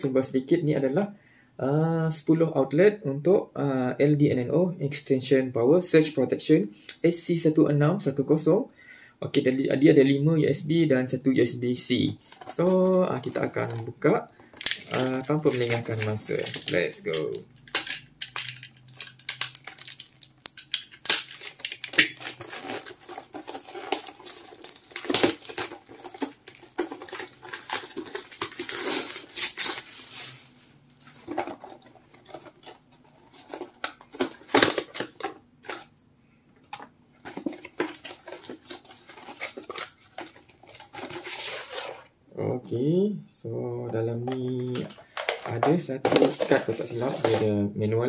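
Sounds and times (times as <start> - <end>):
cardboard packaging rustling: 12.2 - 36.0, 36.8 - 42.1, 44.6 - 47.5.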